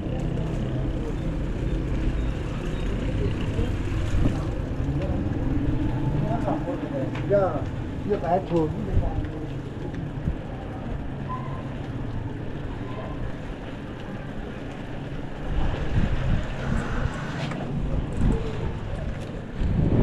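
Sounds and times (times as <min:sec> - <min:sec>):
vehicle engine rumble: 0:00.0 - 0:20.0
wind buffeting microphone: 0:15.3 - 0:20.0.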